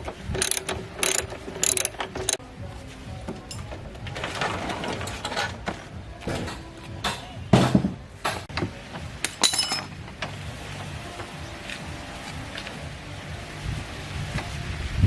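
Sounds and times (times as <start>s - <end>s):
hand tools clinking on metal: 0.1s - 2.4s, 3.4s - 5.6s, 8.3s - 11.9s.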